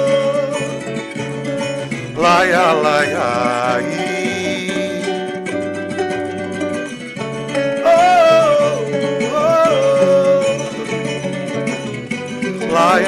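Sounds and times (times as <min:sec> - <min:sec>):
man singing wordless melody: 0:00.0 - 0:01.2, 0:01.9 - 0:05.4, 0:07.8 - 0:11.4, 0:12.6 - 0:13.0
guitar accompaniment: 0:00.0 - 0:13.0.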